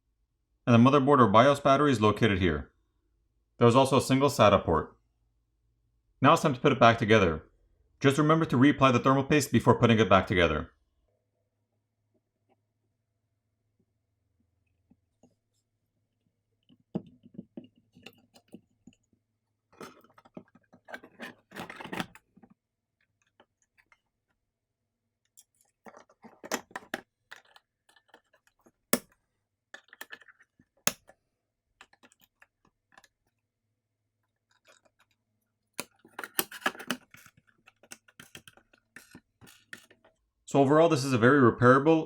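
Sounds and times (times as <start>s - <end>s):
small clicks of plastic parts: 25.3s - 31.2s, 31.8s - 33.4s, 34.2s - 40.2s.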